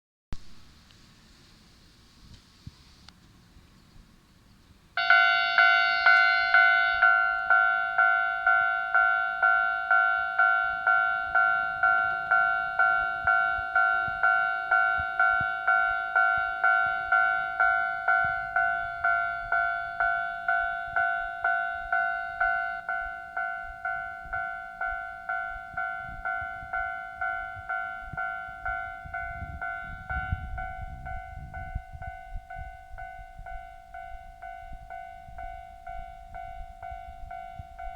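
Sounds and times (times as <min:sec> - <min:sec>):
level crossing warning bell: 0:05.0 - 0:37.9
low rumble: 0:10.8 - 0:37.9.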